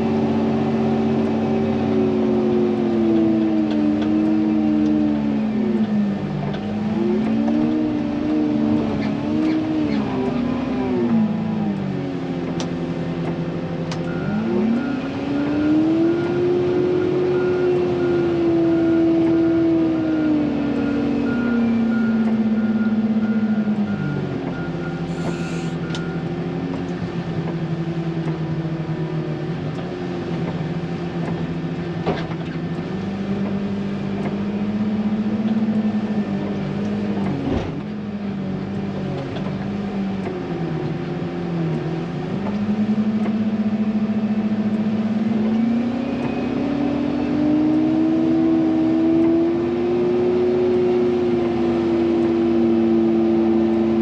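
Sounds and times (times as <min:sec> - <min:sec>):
wheel loader diesel engine revving: 0:00.0 - 0:54.0
reversing alarm beeping: 0:14.0 - 0:26.3.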